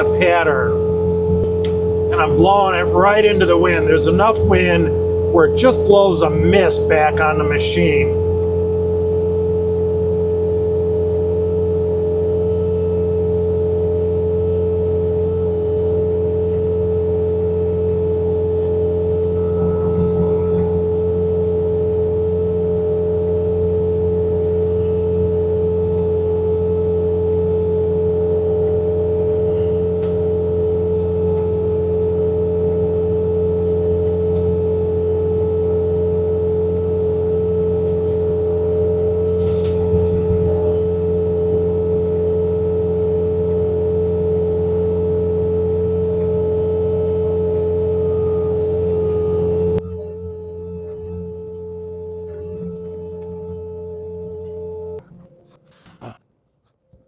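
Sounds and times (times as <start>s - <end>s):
diesel engine drone: 0.0s - 55.0s
snowblower high whine: 0.0s - 55.0s.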